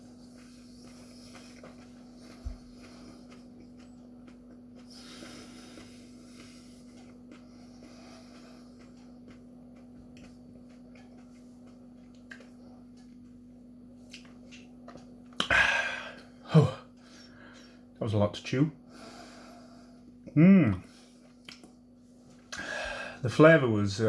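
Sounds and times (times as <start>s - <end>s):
person chewing: 0.0s - 17.7s, 20.0s - 21.8s
steady low hum: 0.0s - 24.0s
breathing through the nose: 4.9s - 6.9s, 22.6s - 23.2s.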